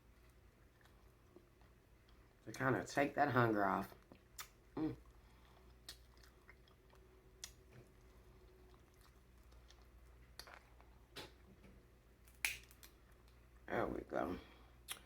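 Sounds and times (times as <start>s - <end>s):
person chewing food: 0.0s - 2.5s, 3.9s - 11.6s.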